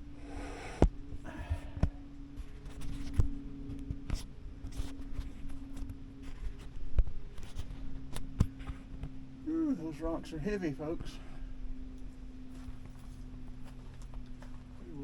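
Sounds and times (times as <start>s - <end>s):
faint steady hum: 0.0s - 15.0s
scraping rustles: 4.0s - 9.0s.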